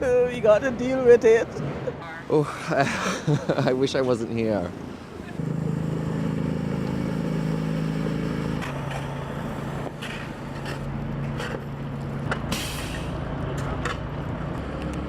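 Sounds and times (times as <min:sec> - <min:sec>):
vehicle engine running: 0:05.4 - 0:12.5
short hissing or scraping noises: 0:12.5 - 0:13.2.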